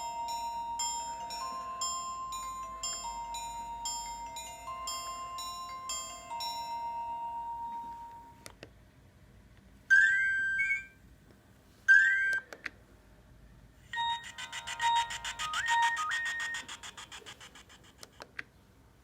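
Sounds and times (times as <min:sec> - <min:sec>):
buzzy pulsing ringtone melody: 0:00.0 - 0:08.4, 0:13.9 - 0:18.1
phone ringtone sweeping upward: 0:00.0 - 0:08.4, 0:09.9 - 0:10.9, 0:14.0 - 0:17.8.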